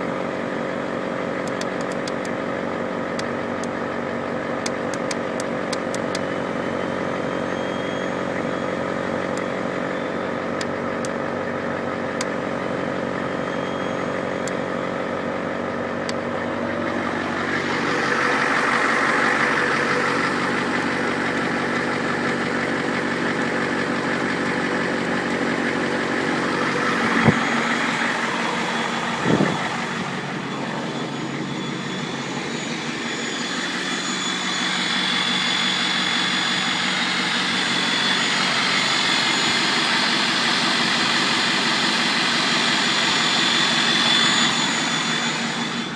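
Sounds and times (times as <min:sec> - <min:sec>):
diesel engine running: 0:00.0 - 0:45.9
turbo whistle: 0:07.2 - 0:10.3, 0:13.2 - 0:14.4, 0:26.6 - 0:45.9.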